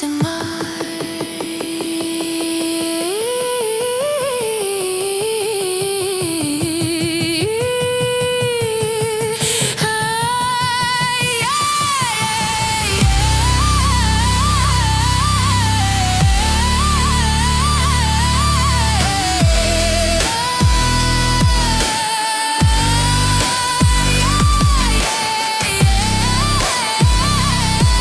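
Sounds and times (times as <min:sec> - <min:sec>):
electronic folk-style music: 0:00.0 - 0:28.0
heavy bass: 0:13.0 - 0:21.9, 0:22.6 - 0:25.1, 0:25.7 - 0:28.0.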